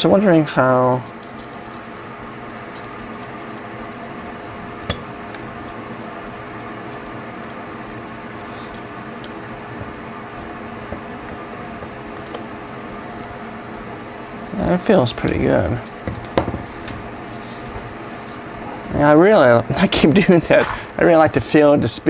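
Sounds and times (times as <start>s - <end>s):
steady room hum: 0.0s - 22.0s
metal parts clicking and clinking: 0.8s - 7.6s, 19.8s - 21.0s.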